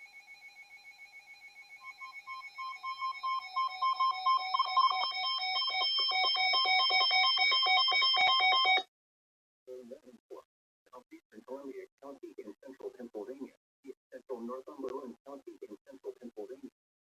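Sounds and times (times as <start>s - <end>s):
rapid electronic beeping: 1.8s - 8.8s.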